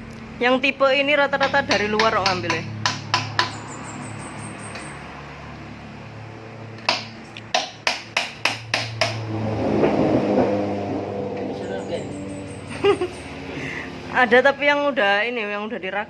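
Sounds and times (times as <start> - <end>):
sharp taps or clicks: 1.4 - 3.6.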